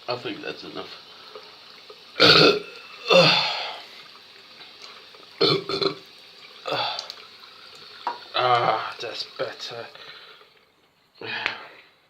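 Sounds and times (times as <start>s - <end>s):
man burping loudly: 2.2s - 3.7s, 5.4s - 6.0s.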